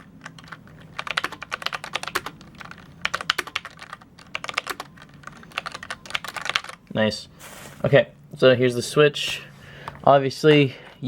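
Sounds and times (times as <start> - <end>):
mechanical keyboard clicking: 0.0 - 6.8.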